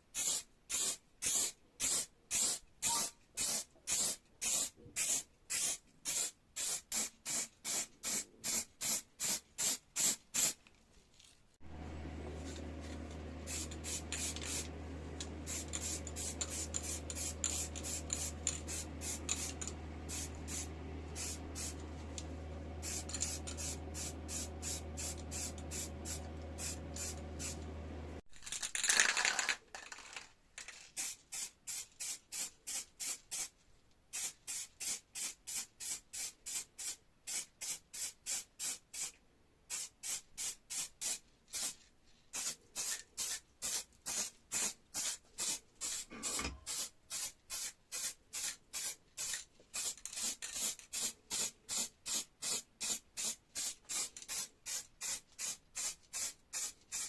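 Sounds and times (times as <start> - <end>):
paint spray hissing bursts: 0.2 - 10.6, 13.5 - 14.7, 15.4 - 21.8, 22.8 - 27.6, 31.0 - 33.5, 34.1 - 39.1, 39.7 - 41.8, 42.4 - 57.0
low motor hum: 11.6 - 28.2.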